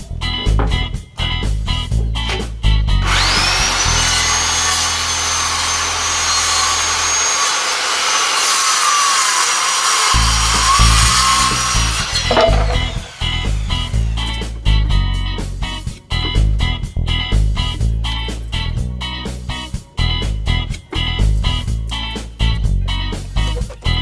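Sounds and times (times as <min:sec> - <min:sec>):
reggae music: 0:00.0 - 0:03.1
electric power tool whining: 0:03.0 - 0:15.0.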